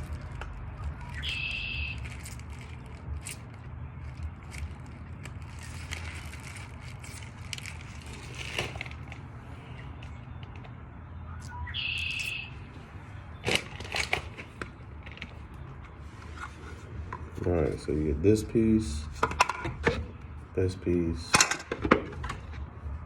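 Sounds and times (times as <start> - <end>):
steady low hum: 0.0 - 23.0
short high electronic beep: 11.4 - 12.5
clicks and knocks of handling: 19.2 - 20.1.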